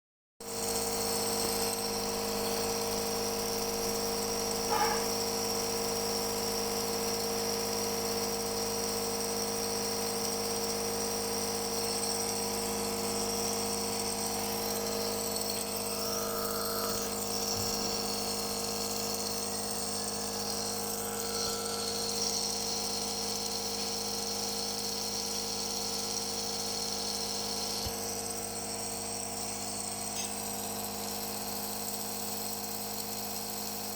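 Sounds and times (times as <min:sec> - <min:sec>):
small electric motor humming: 0:00.4 - 0:33.9.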